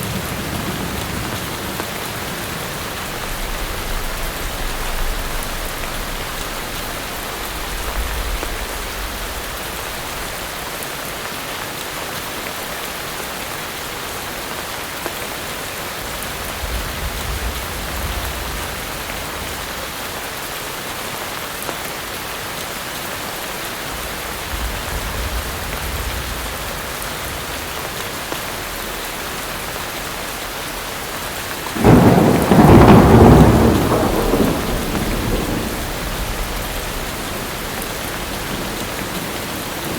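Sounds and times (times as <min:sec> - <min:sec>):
thunder rumbling: 0:00.0 - 0:10.5, 0:16.0 - 0:19.9, 0:23.8 - 0:28.8, 0:31.6 - 0:39.9
heavy rain: 0:00.0 - 0:39.9
loud thunderclap: 0:16.3 - 0:19.6, 0:23.9 - 0:27.7, 0:31.7 - 0:39.9.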